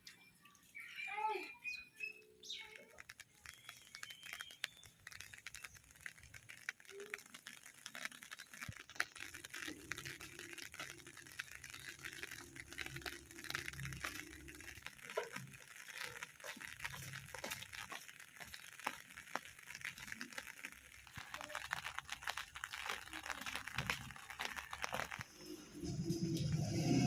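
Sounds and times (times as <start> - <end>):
rain pattering: 2.0 - 27.0.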